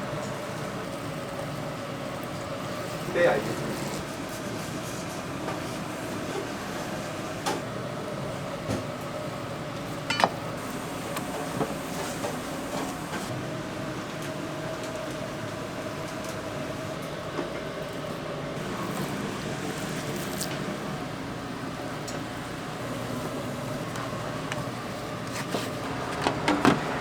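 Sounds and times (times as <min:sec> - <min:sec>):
kitchenware knocking and clinking: 0:10.1 - 0:10.4.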